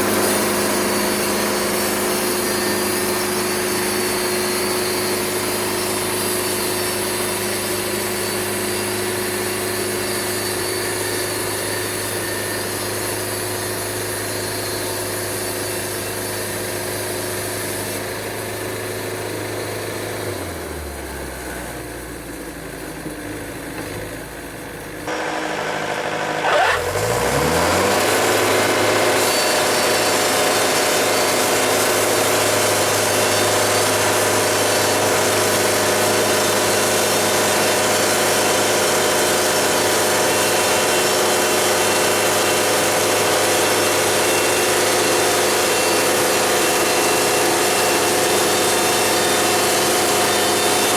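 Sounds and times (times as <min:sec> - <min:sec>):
sawmill band saw cutting wood: 0:00.0 - 0:50.9
sawmill engine running: 0:00.0 - 0:50.9.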